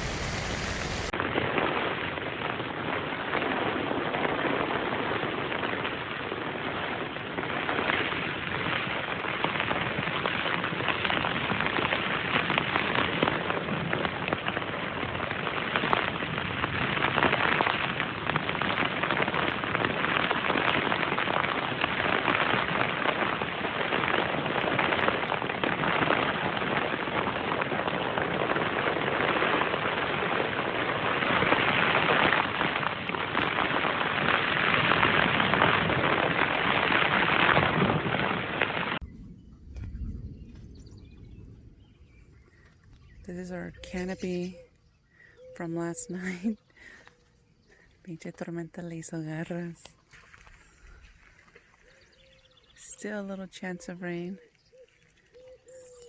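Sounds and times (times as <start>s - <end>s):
heavy rain falling: 0.0s - 1.1s.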